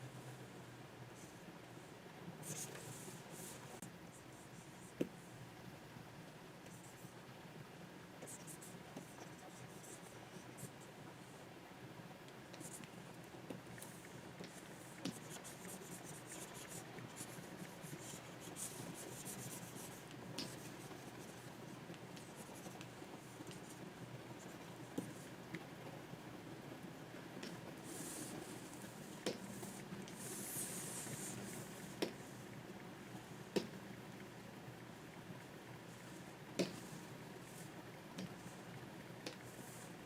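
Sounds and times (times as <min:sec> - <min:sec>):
faint low hum: 0:00.0 - 0:40.0
stylus scratching on drawing tablet: 0:13.8 - 0:25.2, 0:27.8 - 0:32.2.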